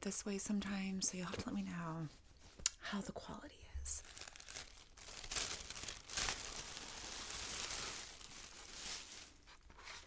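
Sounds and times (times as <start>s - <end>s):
plastic packaging crinkling: 4.0s - 10.0s.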